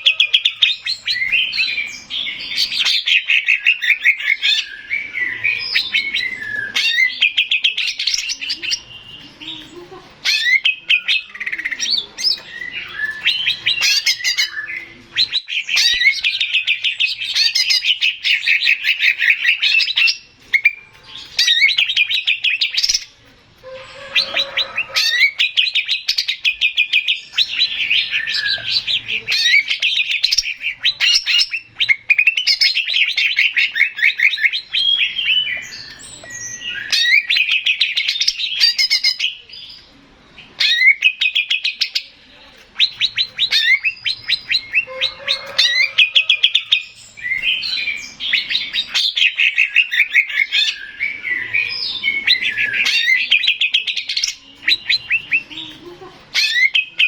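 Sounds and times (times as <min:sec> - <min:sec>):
bird singing trills and chirps: 0:00.0 - 0:57.0.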